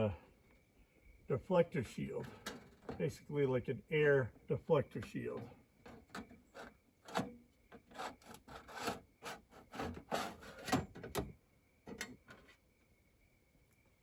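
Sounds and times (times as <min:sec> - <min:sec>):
metal shield scraping and clicking: 0:06.5 - 0:11.0.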